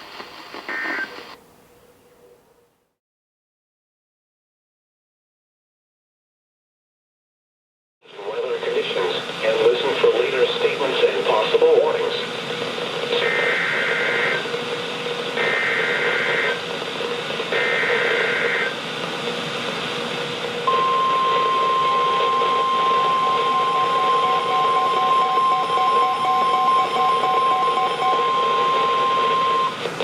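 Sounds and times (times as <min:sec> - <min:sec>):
radio static hiss: 0:00.0 - 0:01.4, 0:08.0 - 0:30.0
steady warning alarm tone: 0:13.2 - 0:14.6, 0:15.3 - 0:16.8, 0:17.6 - 0:18.8, 0:20.6 - 0:29.8.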